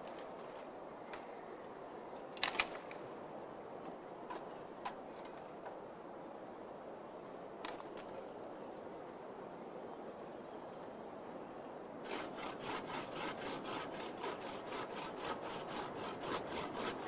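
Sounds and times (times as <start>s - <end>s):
steady low hiss: 0.0s - 17.0s.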